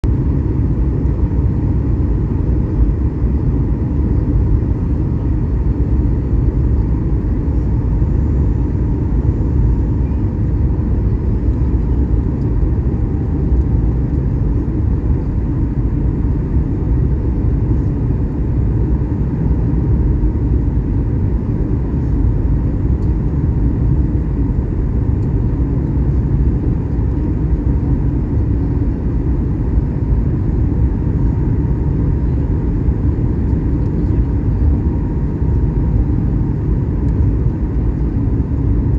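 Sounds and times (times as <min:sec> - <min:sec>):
airliner cabin engine rumble: 0:00.0 - 0:38.9.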